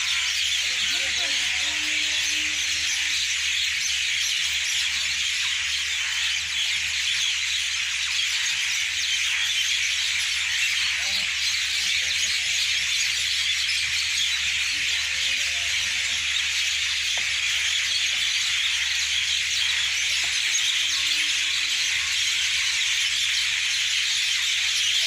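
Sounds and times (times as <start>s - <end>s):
flock of small birds chirping: 0.0s - 25.0s.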